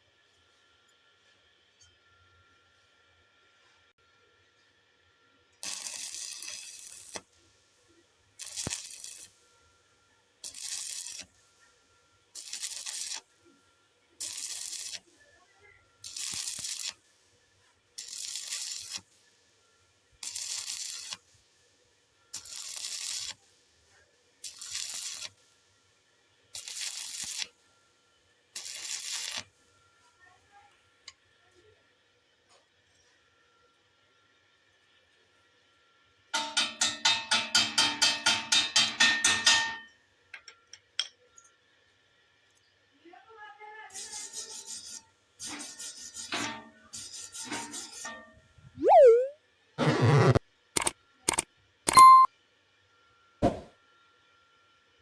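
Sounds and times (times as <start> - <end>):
welding arc crackling: 5.6 - 7.2, 8.4 - 9.3, 10.4 - 11.3, 12.4 - 13.2, 14.2 - 15.0, 16.0 - 17.0, 18.0 - 19.0, 20.2 - 21.2, 22.4 - 23.4, 24.4 - 25.3, 26.6 - 27.5, 28.6 - 29.4, 49.2 - 51.4.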